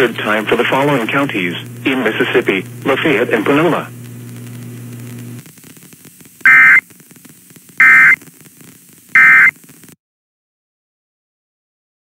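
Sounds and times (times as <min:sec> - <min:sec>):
faint radio static: 0:00.0 - 0:10.0
low steady hum: 0:06.5 - 0:06.8, 0:07.8 - 0:08.2
screeching digital data tone bursts: 0:06.5 - 0:06.8, 0:07.8 - 0:08.2, 0:09.2 - 0:09.5.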